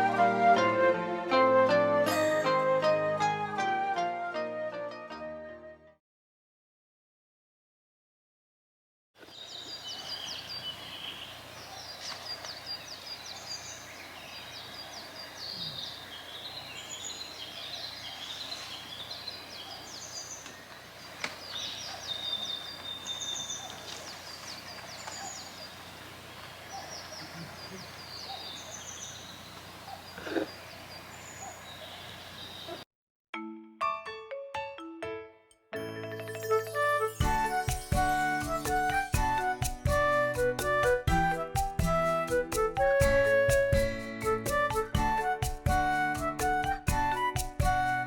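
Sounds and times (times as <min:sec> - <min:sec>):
wild birds chirping and trilling: 0:09.2 - 0:32.8
steady low hiss: 0:09.3 - 0:32.8.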